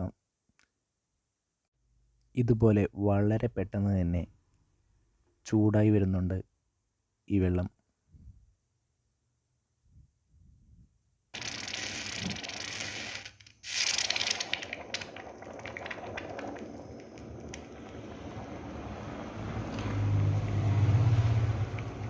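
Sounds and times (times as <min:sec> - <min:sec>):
water hissing and crackling: 0:11.4 - 0:20.4.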